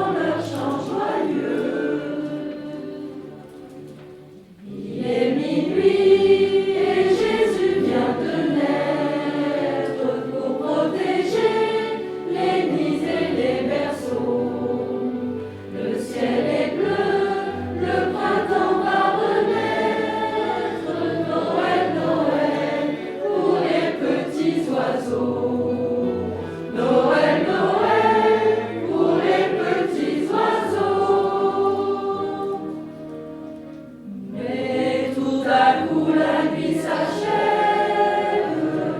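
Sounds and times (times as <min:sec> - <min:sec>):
choir singing: 0:00.0 - 0:38.9.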